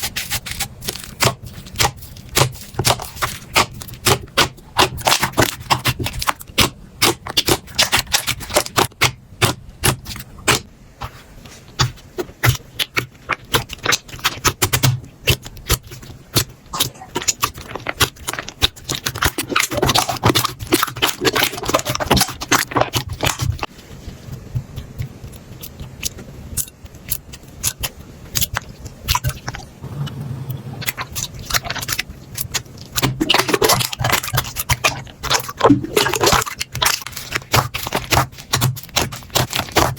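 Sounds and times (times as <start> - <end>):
slime clicking and popping: 1.2 - 10.6.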